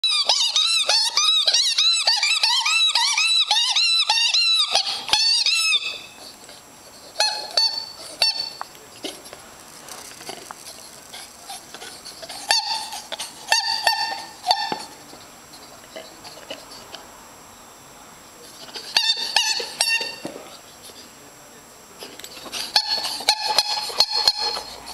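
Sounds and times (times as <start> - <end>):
squeaky toy squeaking: 0.0 - 6.2, 7.2 - 8.6, 12.2 - 15.0, 18.7 - 20.3, 22.4 - 24.9.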